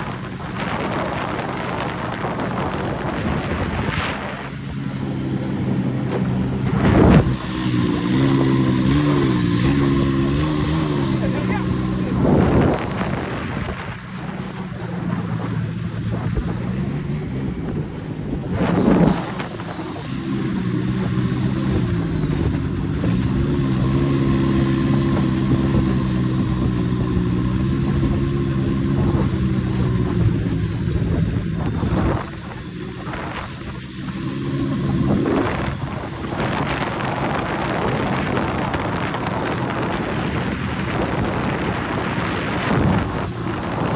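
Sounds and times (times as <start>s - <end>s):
loud rushing whoosh: 0.0s - 33.8s
boat engine running: 0.0s - 43.9s.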